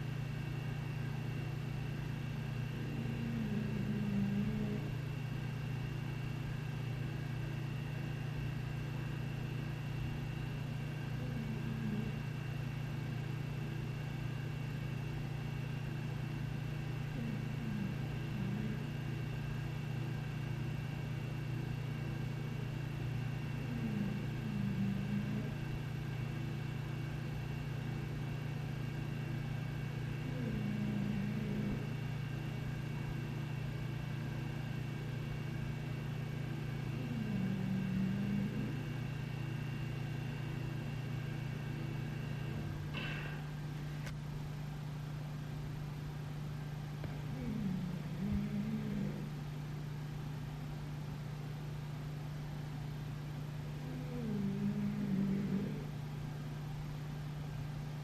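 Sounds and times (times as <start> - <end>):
steady low hum: 0.0 - 58.0
dog snoring: 2.6 - 5.2, 9.6 - 12.8, 16.8 - 20.3, 22.2 - 26.2, 29.4 - 33.1, 35.5 - 41.2, 47.1 - 49.4, 53.8 - 56.0.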